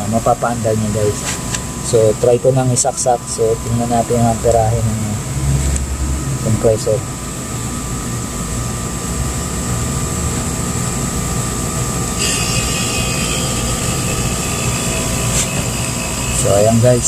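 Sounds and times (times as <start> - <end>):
compressor humming: 0.0 - 17.0
brief high whine: 12.1 - 17.0.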